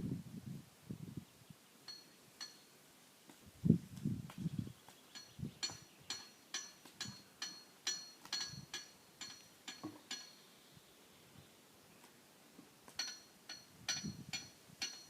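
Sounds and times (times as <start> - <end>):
rhythmic ringing clinks: 1.9 - 2.7, 5.1 - 10.4, 13.0 - 15.0.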